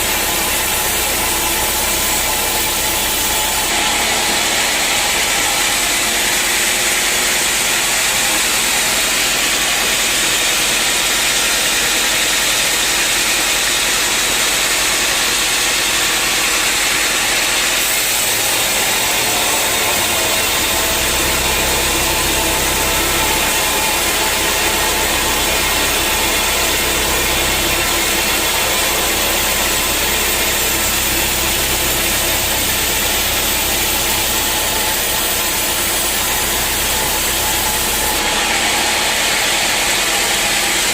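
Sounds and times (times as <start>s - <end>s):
sawmill machinery hissing: 0.0s - 40.9s.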